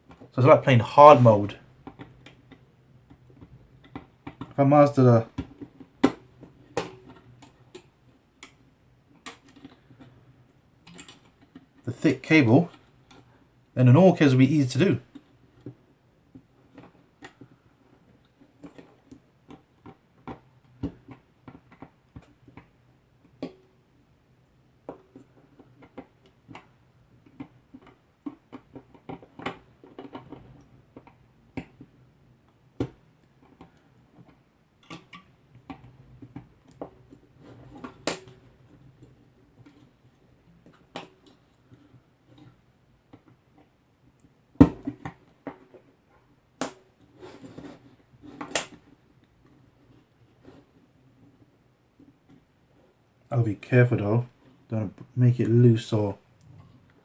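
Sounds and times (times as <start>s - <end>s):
small clicks and taps of cable work: 1.8s - 4.6s, 5.3s - 11.8s, 15.1s - 23.6s, 24.8s - 45.9s.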